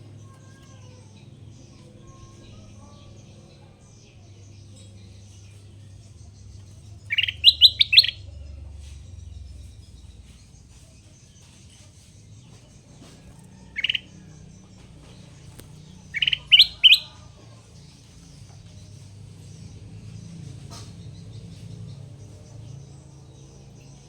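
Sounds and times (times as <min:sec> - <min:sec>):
bulbul singing: 0:00.0 - 0:24.0.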